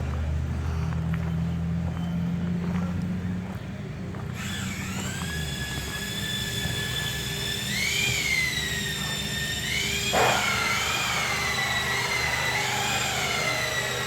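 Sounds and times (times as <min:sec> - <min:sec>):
power tool high-pitched whine: 0:04.4 - 0:14.0.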